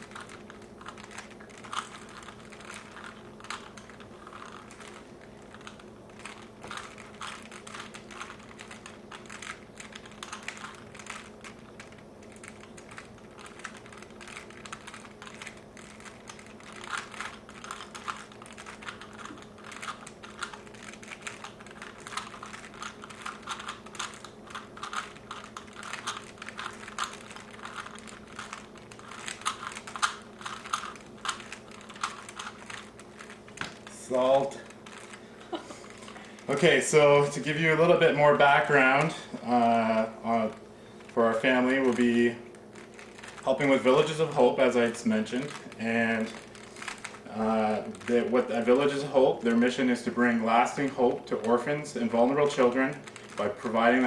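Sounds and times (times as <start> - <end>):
plastic puzzle cubes clicking: 0.1 - 33.8.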